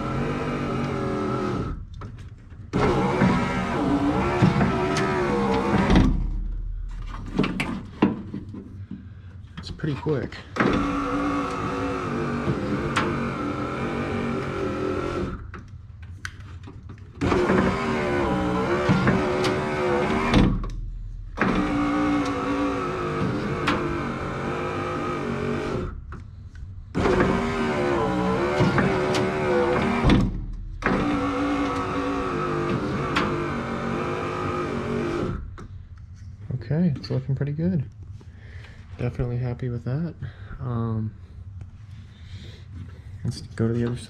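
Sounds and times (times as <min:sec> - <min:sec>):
power window motor: 0:00.0 - 0:08.0, 0:10.4 - 0:15.7, 0:17.2 - 0:35.8.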